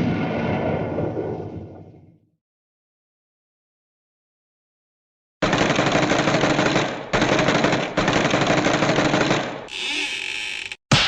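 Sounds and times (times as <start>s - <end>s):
machine-gun fire: 5.4s - 9.7s.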